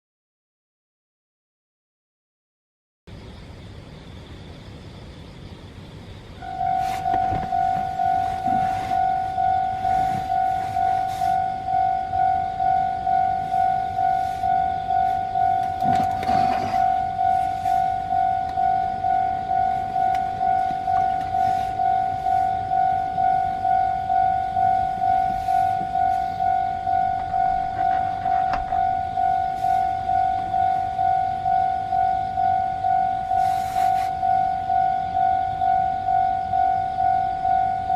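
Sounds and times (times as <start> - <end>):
level-crossing warning bell: 6.4 - 37.9.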